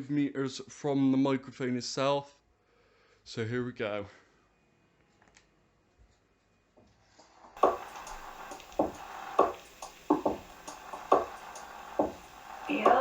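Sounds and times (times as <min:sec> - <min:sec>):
song over pa speakers: 0:07.6 - 0:13.0.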